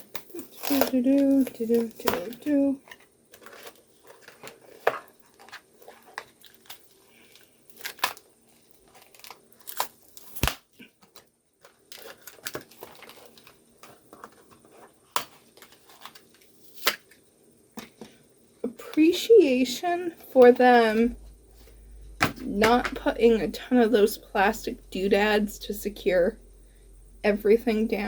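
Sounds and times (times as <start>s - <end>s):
plastic packaging clicks and crinkles: 0.0s - 17.2s.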